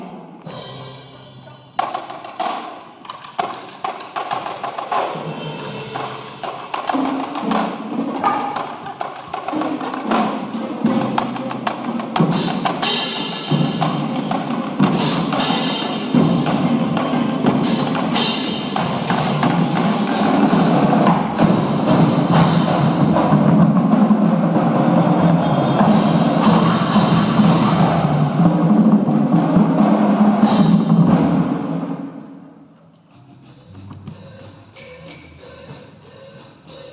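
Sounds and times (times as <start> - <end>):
cymbal crashes: 0.0 - 2.2, 12.2 - 23.5, 24.9 - 29.2
drums struck in rhythm: 0.0 - 32.4, 33.1 - 36.9.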